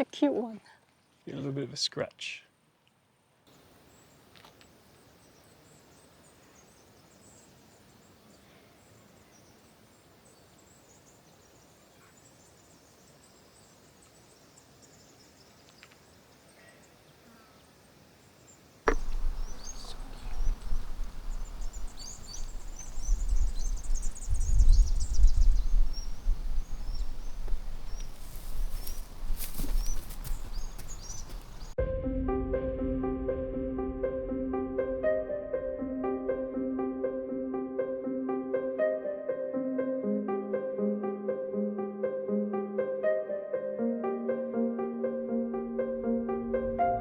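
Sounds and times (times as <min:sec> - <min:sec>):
birds chirping: 0:18.4 - 0:31.8
wind buffeting microphone: 0:18.9 - 0:31.8.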